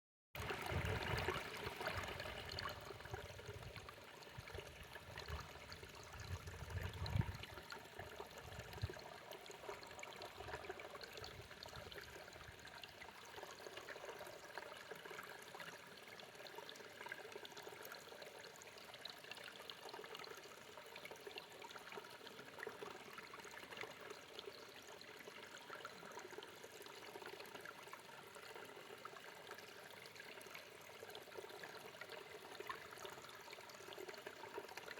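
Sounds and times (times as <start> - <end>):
mountain stream flowing: 0.4 - 34.9.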